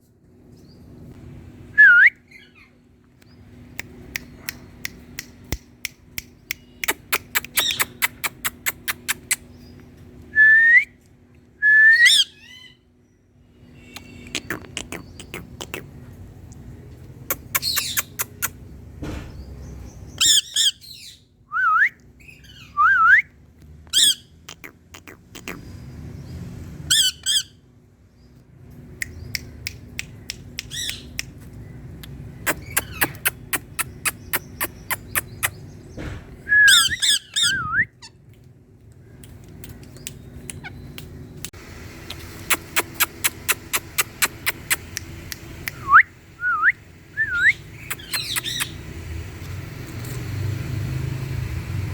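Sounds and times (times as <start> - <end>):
quick sharp clicks: 3.8 - 9.5, 17.3 - 18.6, 29.0 - 35.6, 39.2 - 46.0, 47.8 - 48.8
parakeet screeching calls: 12.0 - 12.8, 20.2 - 21.2, 24.0 - 24.3, 26.9 - 27.6, 36.7 - 37.6, 47.5 - 48.8
parakeet whistled notes: 36.5 - 37.9.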